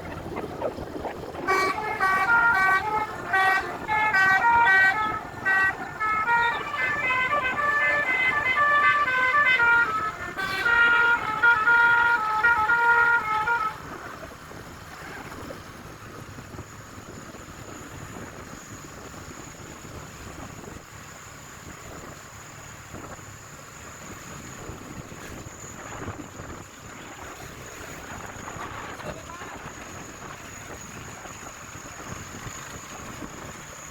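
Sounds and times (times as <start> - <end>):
wind noise rush: 0.0 - 11.4, 24.1 - 33.9
musical vehicle horn tune: 1.4 - 14.2.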